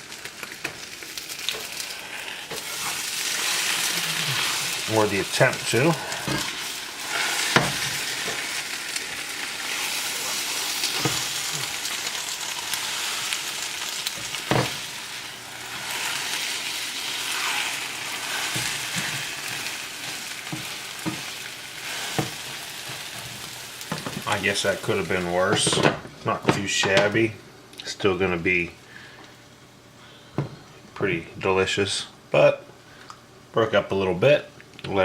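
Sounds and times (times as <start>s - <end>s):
omelet sizzling in frying pan: 0.0s - 25.8s.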